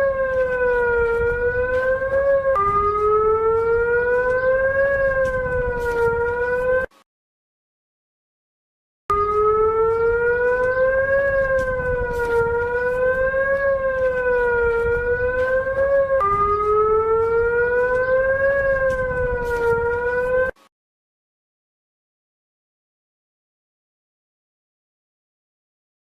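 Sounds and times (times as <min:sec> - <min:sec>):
alarm siren wailing: 0:00.0 - 0:07.0, 0:09.1 - 0:20.7.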